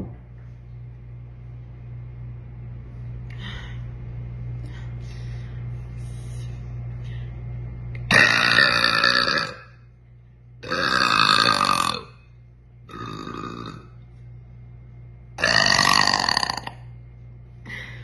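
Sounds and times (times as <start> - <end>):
low steady hum: 0.0 - 18.0
girl burping loudly: 8.1 - 9.7, 10.6 - 12.1, 12.9 - 13.9, 15.4 - 16.8.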